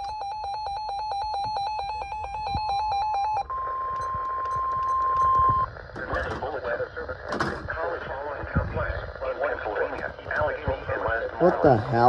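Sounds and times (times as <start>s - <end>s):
rapid electronic alarm beeps: 0.0s - 7.5s
weather radio alarm tone: 0.0s - 12.0s
radio static hiss: 3.4s - 12.0s.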